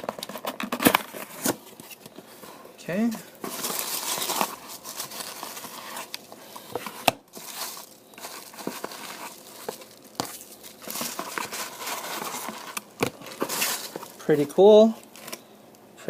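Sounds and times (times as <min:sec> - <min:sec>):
wrapping crinkling and tearing: 0:03.0 - 0:15.4.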